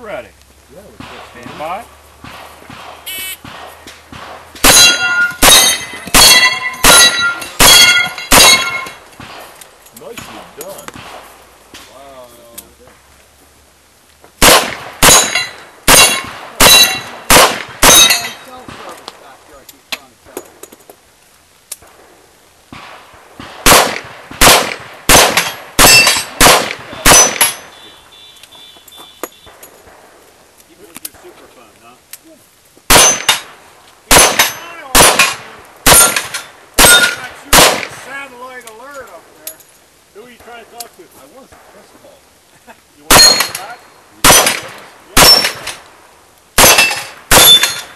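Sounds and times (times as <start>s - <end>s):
bullets ringing steel targets: 1.0s - 11.2s, 14.4s - 18.9s, 23.7s - 28.0s, 32.9s - 38.0s, 43.1s - 45.8s, 46.6s - 47.9s.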